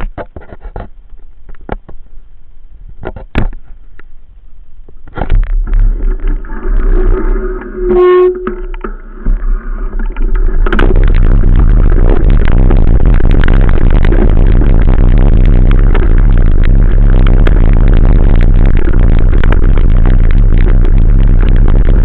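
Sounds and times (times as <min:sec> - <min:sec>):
loud constant rumble: 0:00.0 - 0:22.0
short horn beep: 0:07.8 - 0:08.7
motorcycle engine running: 0:10.8 - 0:22.0.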